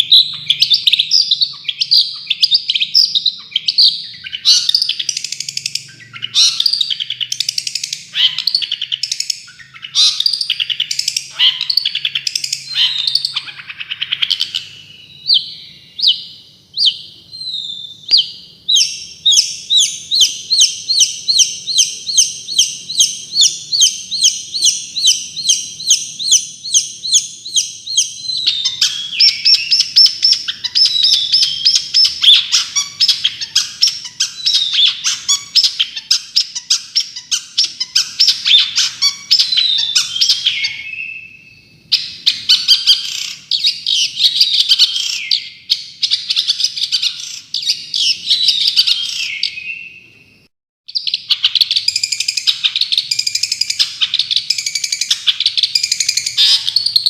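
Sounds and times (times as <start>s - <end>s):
songbird chirping: 0.0s - 57.0s.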